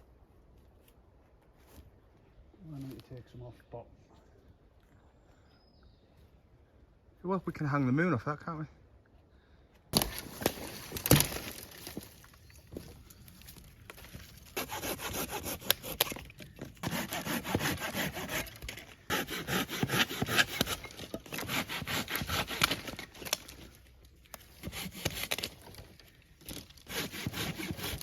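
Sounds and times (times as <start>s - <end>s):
hand saw cutting wood: 14.5s - 23.5s, 24.5s - 25.8s, 26.5s - 28.0s.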